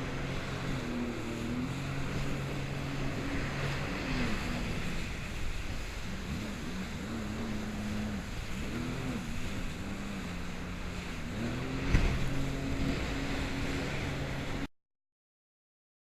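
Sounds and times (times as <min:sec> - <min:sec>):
jet ski engine: 0:00.0 - 0:14.7
water noise: 0:00.0 - 0:14.7
wind: 0:00.0 - 0:14.7.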